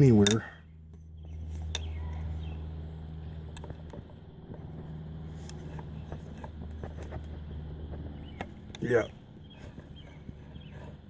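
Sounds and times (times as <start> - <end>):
steady low hum: 0.0 - 11.0
light metal clicks: 0.2 - 2.3.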